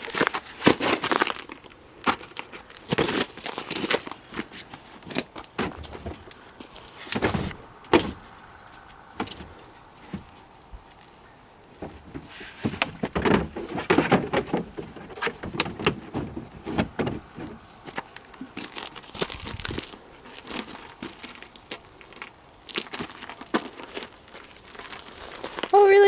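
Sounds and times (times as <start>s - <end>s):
rustling: 0.0s - 26.0s
car parts clunking and rattling: 2.9s - 10.5s, 11.6s - 19.6s.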